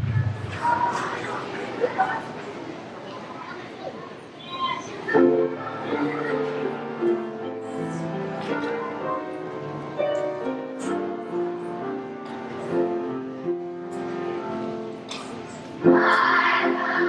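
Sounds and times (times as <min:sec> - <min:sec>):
piano music: 0:05.1 - 0:17.0.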